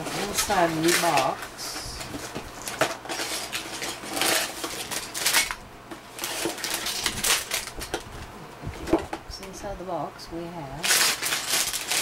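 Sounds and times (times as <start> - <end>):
plastic pieces rattling in box: 2.6 - 5.6, 6.2 - 8.0, 10.8 - 12.0.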